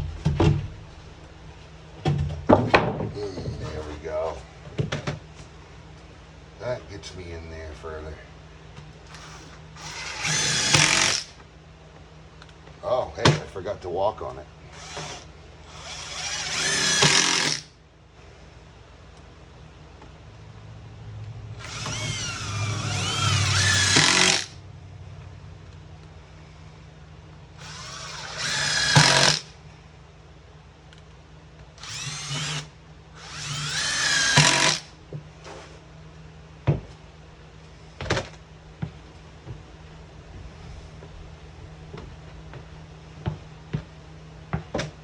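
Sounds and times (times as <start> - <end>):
power drill driving screws: 9.1 - 11.3, 14.8 - 17.7, 21.6 - 24.6, 27.6 - 29.5, 31.8 - 34.9.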